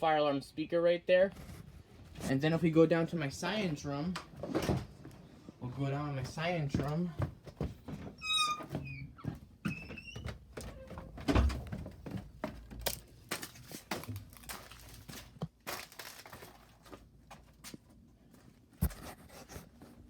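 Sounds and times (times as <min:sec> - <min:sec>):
footsteps: 0:03.5 - 0:19.9
short high squeaks: 0:08.2 - 0:10.2.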